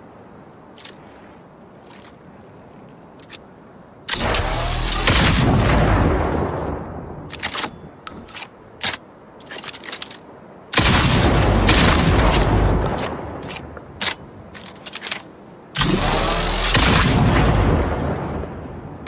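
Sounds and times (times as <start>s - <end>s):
gun handling clicks: 0.7s - 1.1s, 1.8s - 2.2s, 3.1s - 3.5s, 6.4s - 11.0s, 11.7s - 17.0s
loud shotgun blast: 4.1s - 6.8s, 10.8s - 13.6s, 15.8s - 18.5s.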